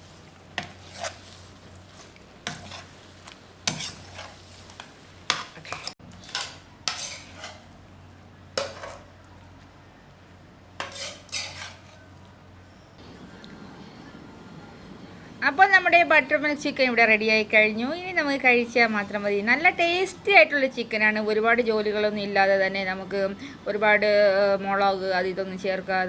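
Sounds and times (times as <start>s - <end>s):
spoon scraping a pan: 0.0s - 7.8s, 8.6s - 9.1s, 10.8s - 12.1s.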